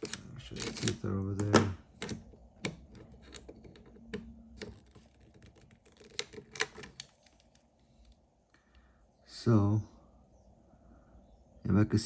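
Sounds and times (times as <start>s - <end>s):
small metal parts clicking: 0.0s - 7.4s.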